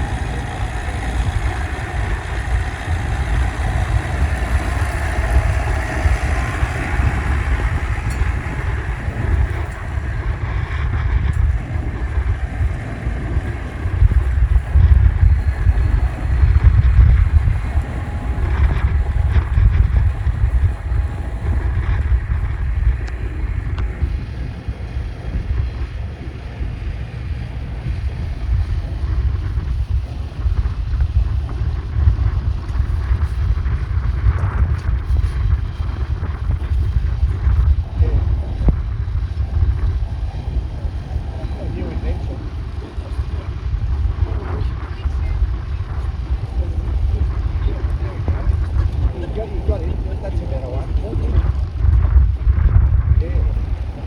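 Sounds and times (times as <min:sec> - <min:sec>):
tractor engine running: 0:00.0 - 0:30.6
wind buffeting microphone: 0:00.0 - 0:54.0.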